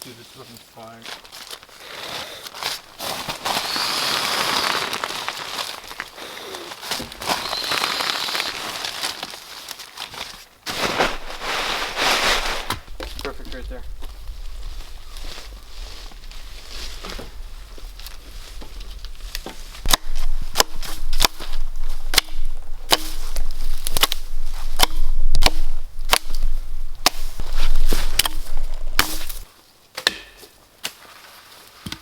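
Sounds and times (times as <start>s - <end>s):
low rumble: 11.1s - 29.5s.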